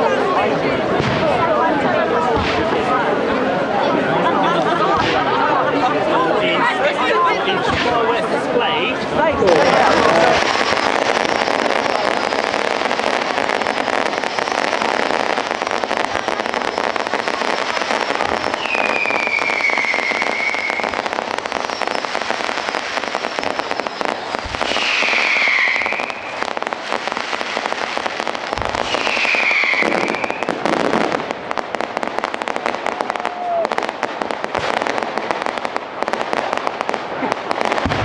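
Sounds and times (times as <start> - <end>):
fireworks crackling and popping: 0.0 - 38.0
falling whistles: 18.6 - 21.0, 24.7 - 26.2, 28.9 - 30.4.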